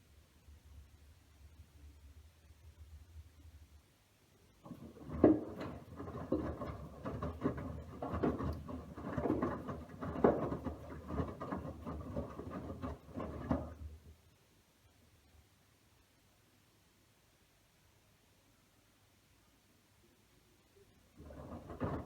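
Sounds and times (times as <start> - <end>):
washing machine drum tumbling laundry: 4.6 - 14.2, 21.2 - 22.0.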